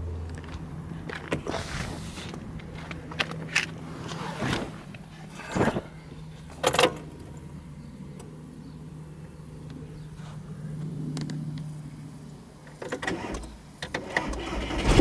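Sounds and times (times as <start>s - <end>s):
diesel engine humming: 0.0s - 15.0s
handling knocks and rustles: 0.3s - 7.2s.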